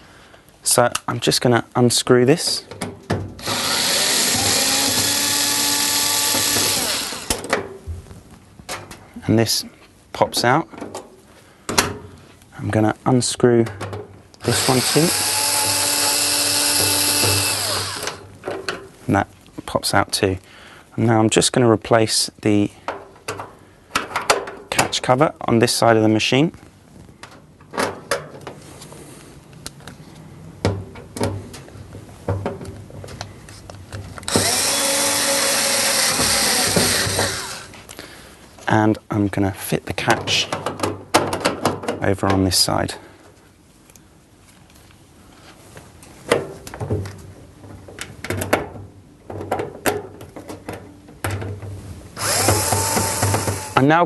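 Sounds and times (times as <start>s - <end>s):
loud steady whirr: 3.4s - 7.4s, 14.4s - 18.2s, 34.3s - 37.7s, 52.2s - 53.8s.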